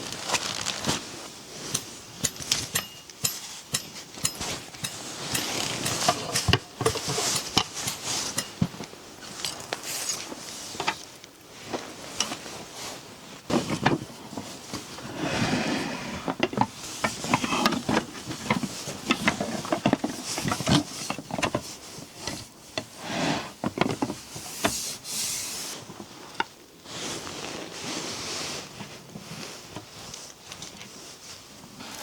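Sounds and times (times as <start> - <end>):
rustling: 0.0 - 32.0
objects clicking and knocking: 1.7 - 11.1, 16.3 - 22.9.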